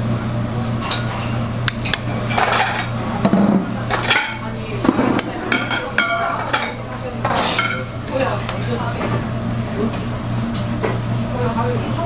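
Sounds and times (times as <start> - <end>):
metal utensils clinking on pans: 0.8 - 3.0, 3.9 - 8.6.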